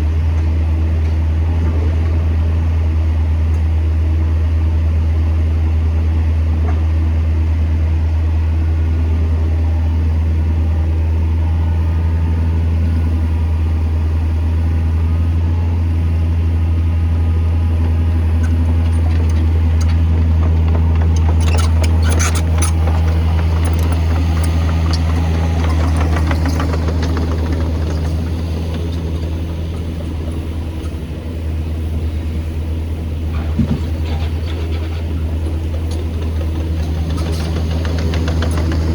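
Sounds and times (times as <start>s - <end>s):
diesel engine droning: 0.0s - 38.9s
clattering and knocking: 17.8s - 31.2s, 33.3s - 38.9s.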